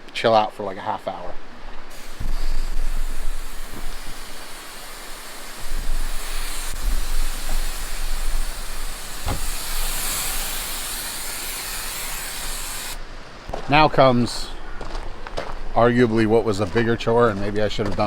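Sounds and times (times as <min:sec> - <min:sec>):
aerosol spray hissing: 0:01.9 - 0:13.0.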